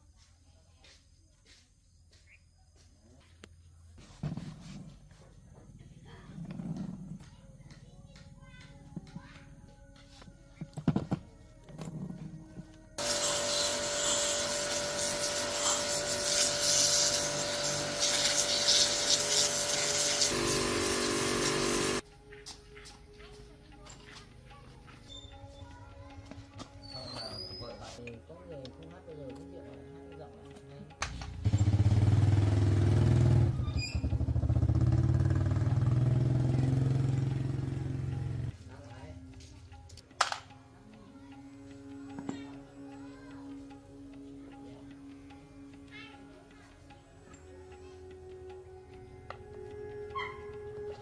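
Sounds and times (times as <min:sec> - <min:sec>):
power tool grinding metal: 0:13.0 - 0:22.0
small motorcycle engine idling: 0:13.0 - 0:22.0, 0:31.3 - 0:38.9.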